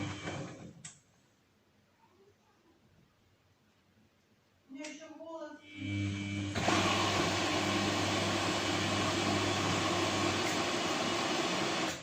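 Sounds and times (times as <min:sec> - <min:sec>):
washing machine humming: 0:00.0 - 0:00.8, 0:05.8 - 0:12.0.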